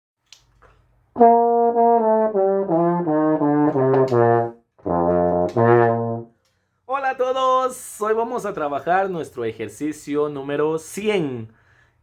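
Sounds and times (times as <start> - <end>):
low brass melody: 1.2 - 6.4.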